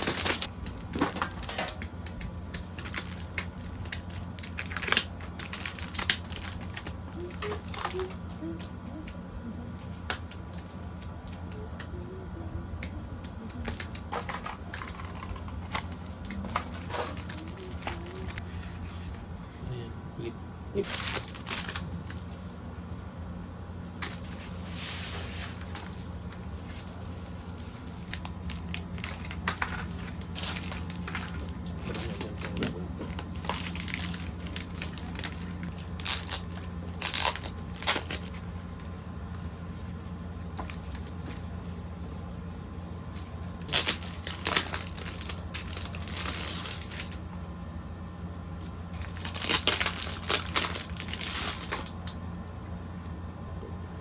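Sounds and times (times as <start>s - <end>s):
packaging crinkling and rustling: 0.0s - 8.6s, 12.8s - 18.8s, 20.8s - 22.5s, 24.0s - 42.6s, 43.2s - 47.3s, 49.0s - 52.2s
low electrical hum: 0.0s - 54.0s.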